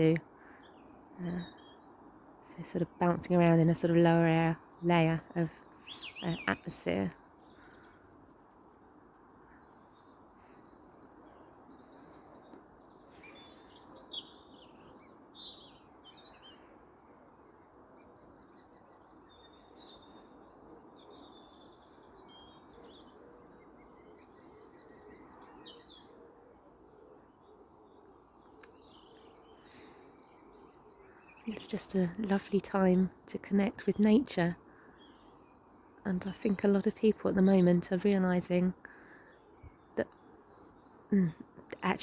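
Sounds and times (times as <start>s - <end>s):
songbirds singing: 0.0s - 42.0s
distant traffic hum: 31.5s - 34.6s.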